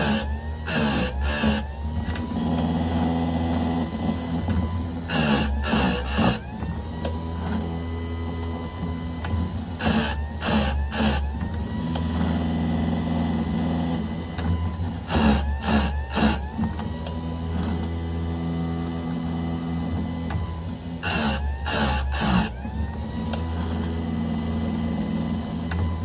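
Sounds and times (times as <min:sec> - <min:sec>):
grinder wheel grinding chain: 0:00.0 - 0:01.8, 0:05.0 - 0:06.6, 0:09.6 - 0:11.4, 0:14.9 - 0:16.6, 0:20.7 - 0:24.0
motor whine: 0:00.0 - 0:26.0.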